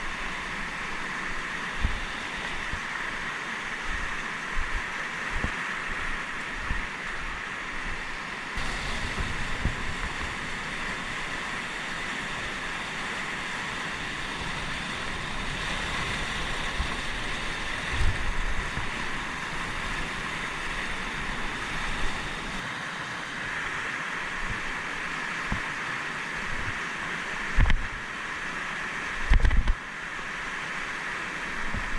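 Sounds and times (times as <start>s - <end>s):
wind on microphone: 0.0s - 22.6s, 26.4s - 26.8s, 27.5s - 28.1s, 29.2s - 29.8s, 31.6s - 31.9s
fast-flowing river water: 0.0s - 31.9s.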